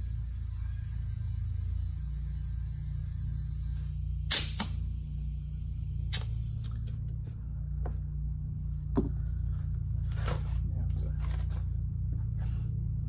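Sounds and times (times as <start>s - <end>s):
steady low hum: 0.0s - 13.0s
tire inflator clicks and taps: 4.2s - 4.9s, 6.0s - 7.1s.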